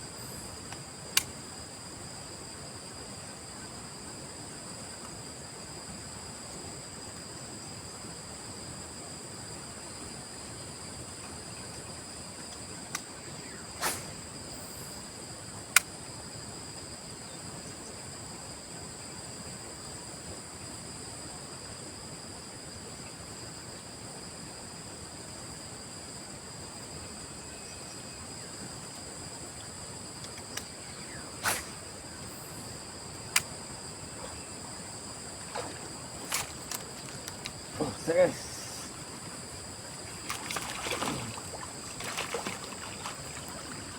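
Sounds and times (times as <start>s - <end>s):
faint outdoor hiss: 0.0s - 43.9s
insects trilling: 0.0s - 43.9s
sharp click: 1.1s - 1.3s, 15.7s - 15.9s, 33.3s - 33.6s
short swish: 13.8s - 14.2s, 31.4s - 31.8s.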